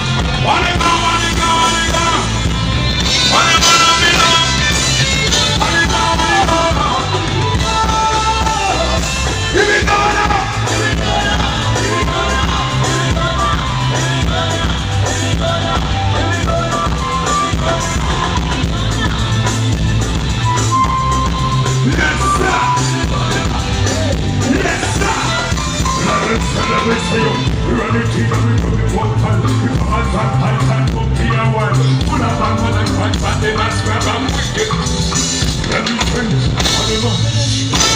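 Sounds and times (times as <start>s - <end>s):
instrumental melody: 0.0s - 36.0s
bass line of low notes: 0.0s - 37.9s
person singing: 0.0s - 37.9s.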